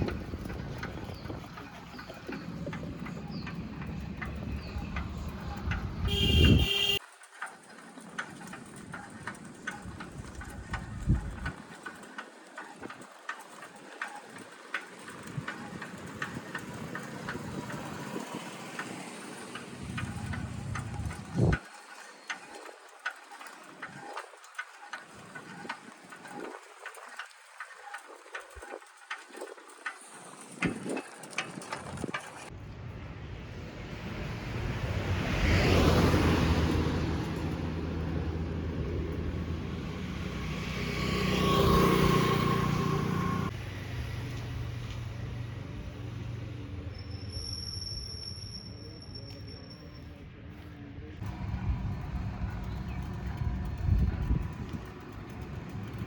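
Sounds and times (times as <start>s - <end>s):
low traffic rumble: 0.0s - 7.0s, 14.0s - 21.6s, 30.4s - 56.0s
bicycle clicks and rattles: 0.0s - 32.6s, 34.6s - 45.3s, 51.2s - 56.0s.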